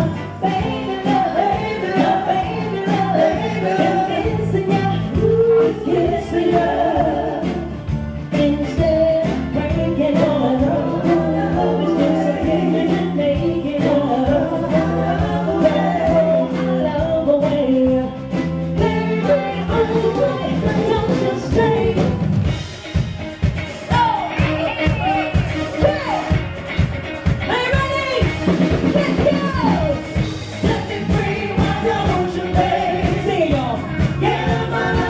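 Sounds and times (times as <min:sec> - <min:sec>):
people singing: 0:00.0 - 0:22.6, 0:29.6 - 0:35.0
live soul band playing: 0:00.0 - 0:35.0.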